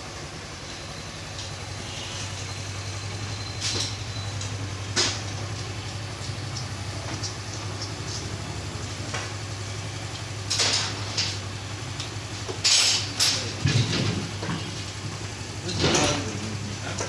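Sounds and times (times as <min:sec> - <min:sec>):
motorcycle engine idling: 0:00.0 - 0:17.0
metallic clinks of tools: 0:12.6 - 0:14.0.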